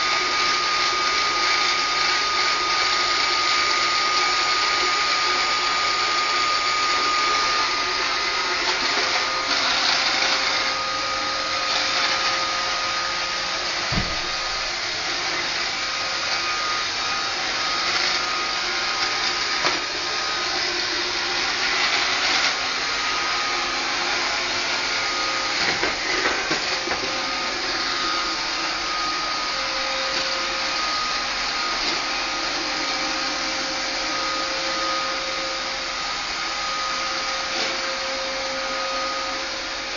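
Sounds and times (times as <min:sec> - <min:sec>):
robot vacuum whirring: 0:00.0 - 0:39.9
low thump: 0:13.9 - 0:14.4.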